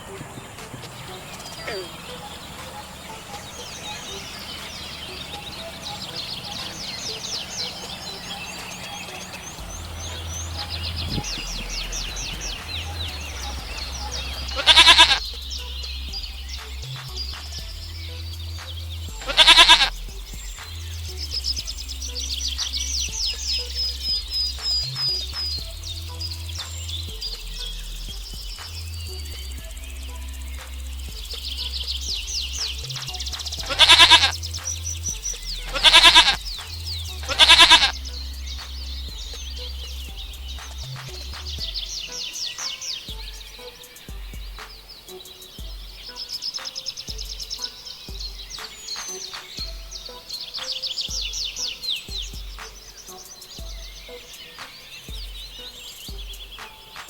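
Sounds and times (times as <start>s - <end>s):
small birds chirping: 0.0s - 57.0s
goat bleating: 14.4s - 15.2s, 19.2s - 19.9s, 33.6s - 34.3s, 35.6s - 36.4s, 37.3s - 38.0s.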